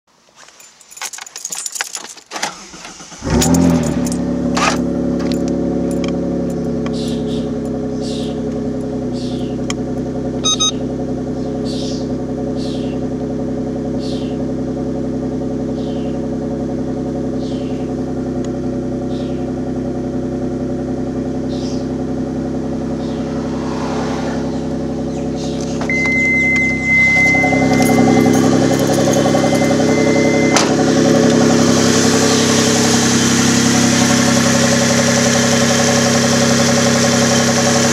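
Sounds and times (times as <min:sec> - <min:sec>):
car engine running: 0:02.5 - 0:37.9
steady high whistle: 0:25.9 - 0:28.2.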